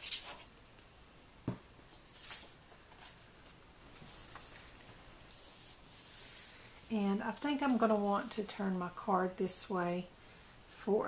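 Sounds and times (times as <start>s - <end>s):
soft rubbing on paper: 4.0s - 8.8s.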